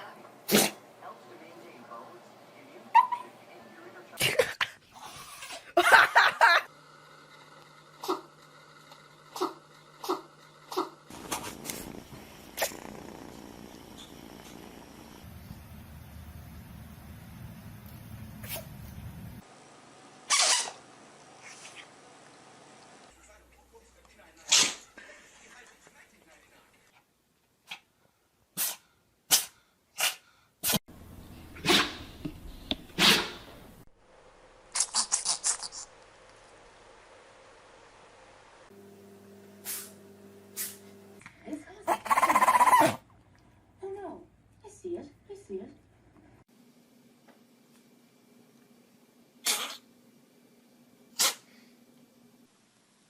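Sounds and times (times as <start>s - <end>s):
cat sneezing: 0.4s - 0.8s, 18.4s - 18.7s, 20.3s - 20.8s, 24.5s - 24.9s, 28.6s - 30.8s, 31.6s - 32.0s, 33.0s - 33.4s, 49.4s - 49.9s, 51.1s - 51.6s.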